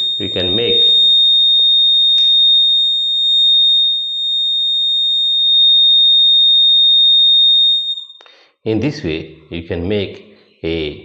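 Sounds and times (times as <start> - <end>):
high-pitched alarm buzzer tone: 0.0 - 4.5.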